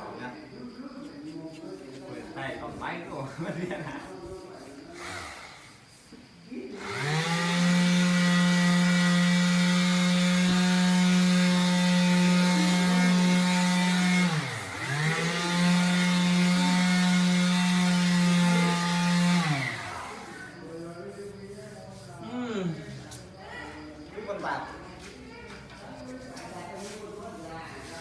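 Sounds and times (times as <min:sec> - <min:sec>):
small electric motor humming: 0:06.8 - 0:20.6.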